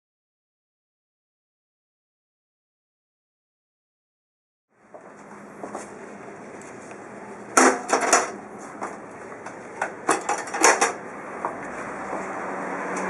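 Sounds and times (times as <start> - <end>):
hard objects clattering: 7.6 - 8.4, 9.4 - 11.0.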